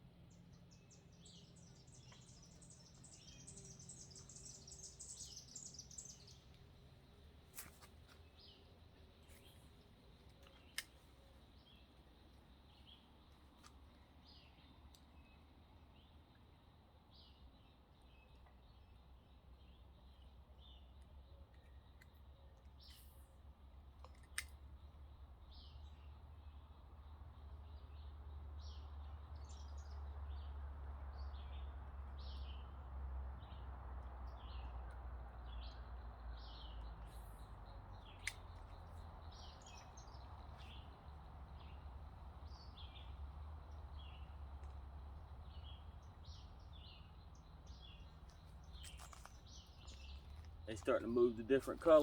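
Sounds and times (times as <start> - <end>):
birds chirping: 0.0 - 23.4, 34.3 - 52.0.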